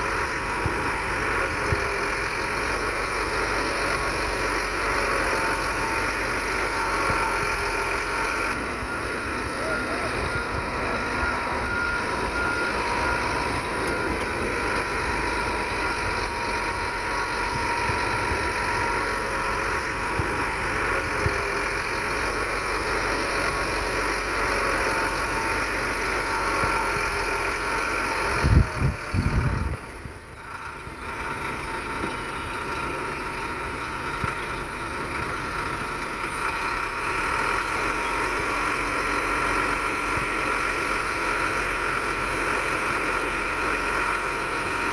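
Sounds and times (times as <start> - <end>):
heavy diesel engine running: 0.0 - 44.9.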